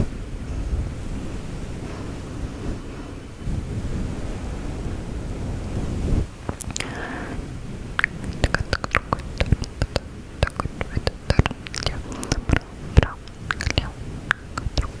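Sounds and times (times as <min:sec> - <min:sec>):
wet mouth clicks and smacks: 0:06.5 - 0:06.9, 0:08.0 - 0:15.0
soft whispering: 0:06.6 - 0:15.0.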